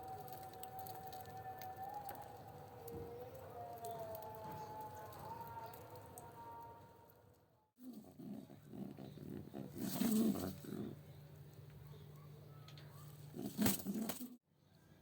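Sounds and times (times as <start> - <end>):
pigeons cooing: 7.9 - 11.2.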